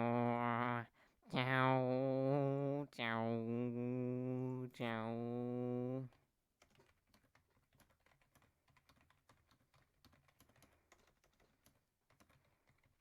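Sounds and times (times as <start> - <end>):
keyboard typing: 6.1 - 13.0.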